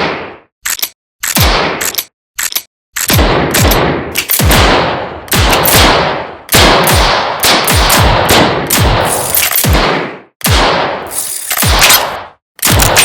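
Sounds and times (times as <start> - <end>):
revolver gunshots echoing: 1.4 - 1.8, 3.1 - 13.0.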